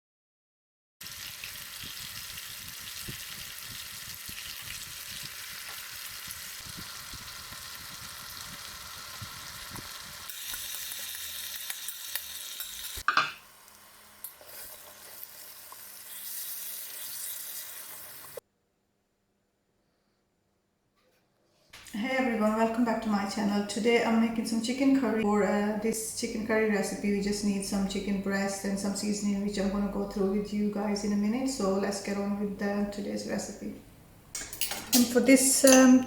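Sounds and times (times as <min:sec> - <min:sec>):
food sizzling in a pan: 0:01.0 - 0:18.4.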